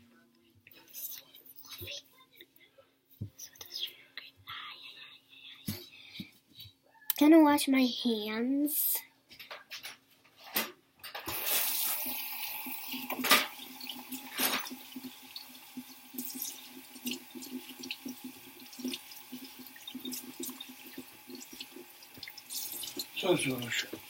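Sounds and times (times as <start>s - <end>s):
tap water running into sink: 11.3s - 24.0s.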